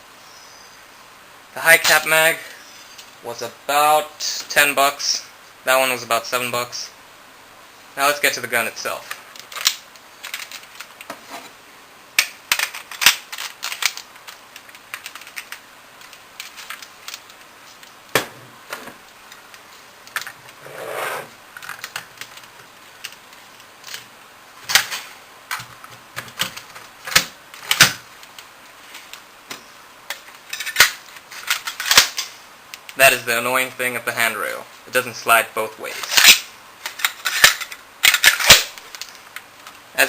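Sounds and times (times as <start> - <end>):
short scraping slide: 20.6 - 21.4
gun parts clicking: 36.0 - 39.4.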